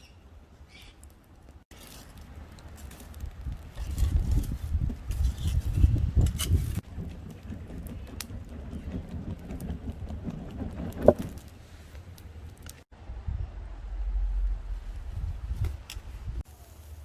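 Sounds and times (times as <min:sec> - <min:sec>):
fire crackling: 0:00.3 - 0:17.0
low rumbling noise: 0:06.8 - 0:16.4.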